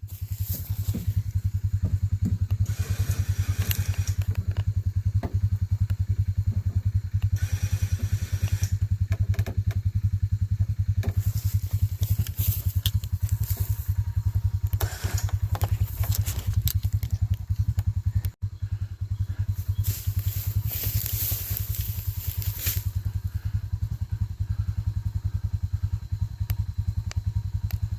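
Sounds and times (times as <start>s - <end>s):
small engine idling: 0.0s - 27.9s
light clicks and clatter: 11.0s - 18.4s.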